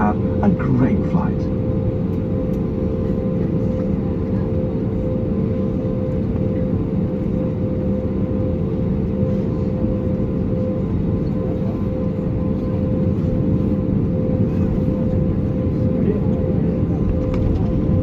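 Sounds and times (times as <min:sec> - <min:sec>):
aircraft cabin engine rumble: 0:00.0 - 0:18.0
steady humming tones: 0:00.0 - 0:18.0.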